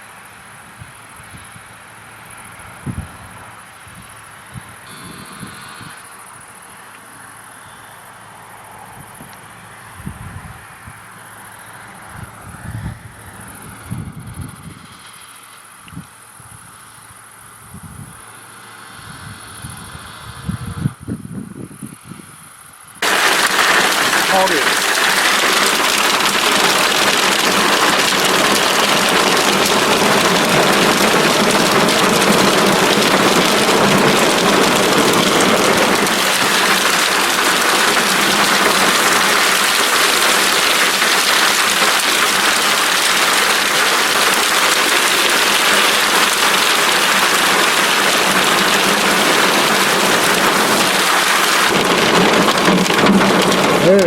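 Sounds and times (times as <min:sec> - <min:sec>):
heavy rain pouring: 0:23.0 - 0:54.0.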